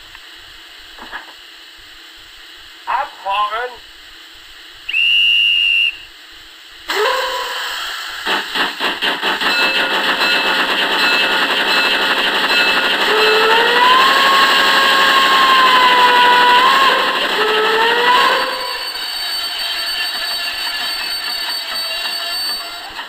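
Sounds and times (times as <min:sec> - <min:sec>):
steam locomotive exhaust chuffs: 0:04.9 - 0:06.1, 0:06.9 - 0:23.0
high squealing tones: 0:12.5 - 0:23.0.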